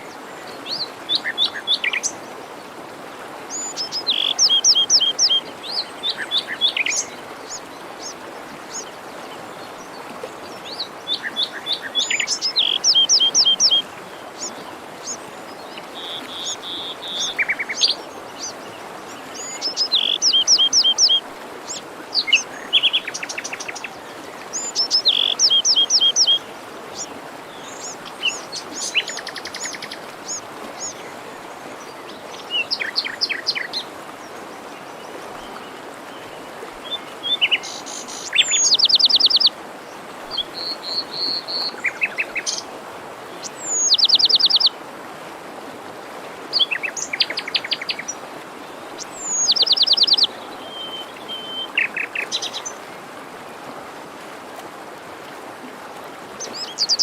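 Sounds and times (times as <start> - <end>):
songbirds singing with trills: 0.0 - 2.2, 3.5 - 31.2, 35.4 - 39.6, 43.4 - 44.7, 49.0 - 52.9
forest stream rushing: 0.0 - 57.0.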